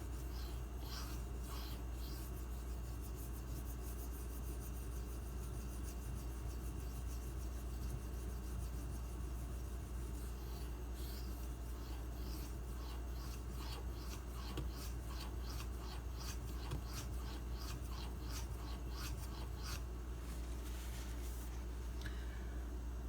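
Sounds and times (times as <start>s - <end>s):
steady low hum: 0.0s - 23.0s
knife scraping on whetstone: 10.3s - 19.9s.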